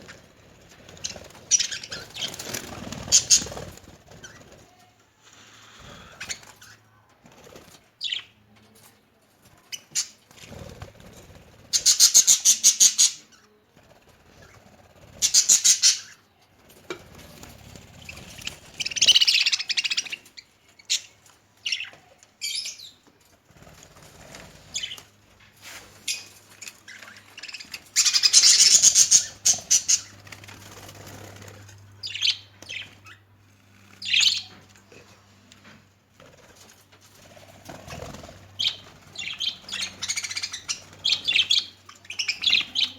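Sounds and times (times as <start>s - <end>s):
rapid wing flapping: 0.1s - 4.8s
budgerigars chirping: 1.0s - 2.5s, 11.7s - 13.2s, 15.2s - 16.1s, 26.9s - 30.1s, 32.0s - 33.2s, 38.6s - 42.9s.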